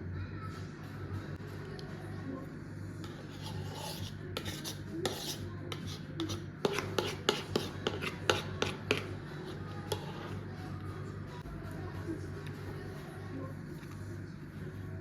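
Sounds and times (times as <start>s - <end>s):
rubbing and scraping handling noises: 3.0s - 10.6s.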